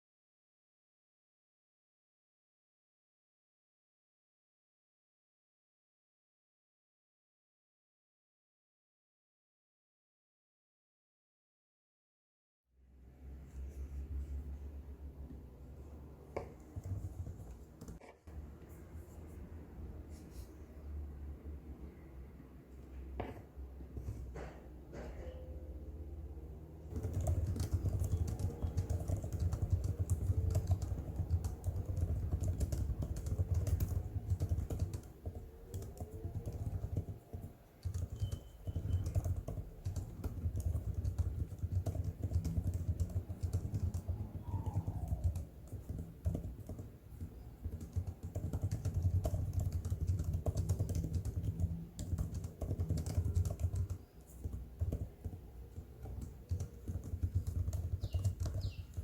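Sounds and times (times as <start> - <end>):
fast typing on laptop keyboard: 16.3 - 18.0, 26.9 - 59.0.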